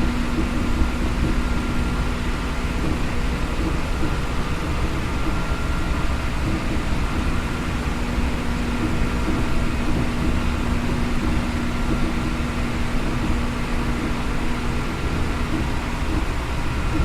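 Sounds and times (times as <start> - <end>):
train hum: 0.0 - 17.0
train wheels rumbling: 0.0 - 17.0.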